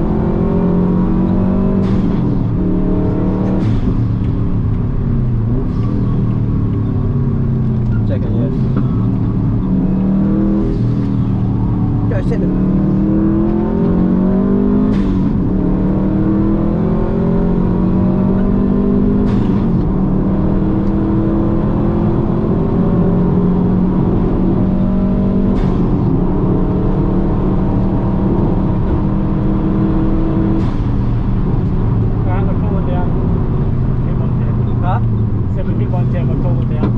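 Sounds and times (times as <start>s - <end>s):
turbocharged engine pulling hard: 0.0s - 36.9s.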